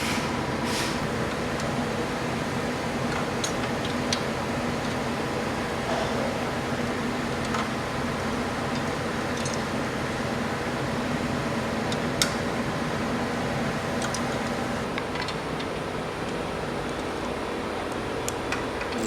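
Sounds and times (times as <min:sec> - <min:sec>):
workshop machinery humming: 0:00.0 - 0:19.0.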